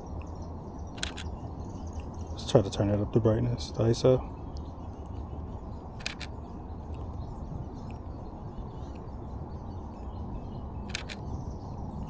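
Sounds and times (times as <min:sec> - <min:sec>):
low outdoor rumble: 0:00.0 - 0:12.0
camera shutter double click: 0:01.0 - 0:01.3, 0:10.9 - 0:11.2.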